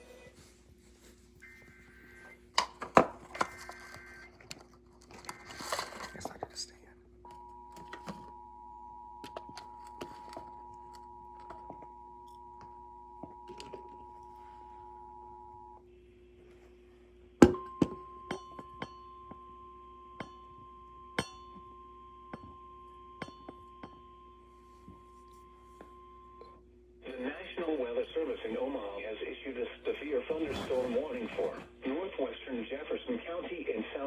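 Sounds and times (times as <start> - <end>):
two-tone alarm: 1.4 - 2.4, 3.4 - 4.4, 7.3 - 15.8, 17.5 - 26.6
steady warning tone: 7.2 - 15.8, 17.6 - 26.6.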